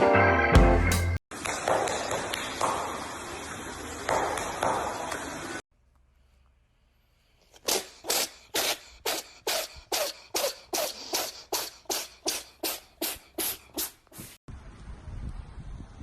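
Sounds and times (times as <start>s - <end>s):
short sneezes: 7.5s - 14.4s.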